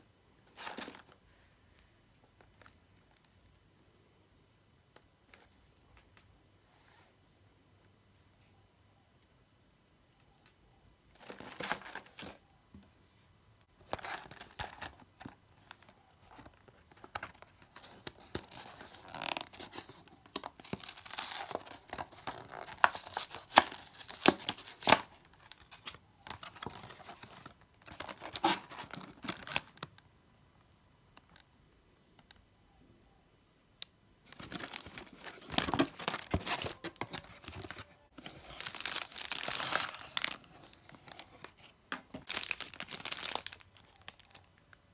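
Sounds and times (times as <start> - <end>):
packaging tearing and crinkling: 17.9 - 25.8, 34.3 - 41.5, 42.1 - 44.4.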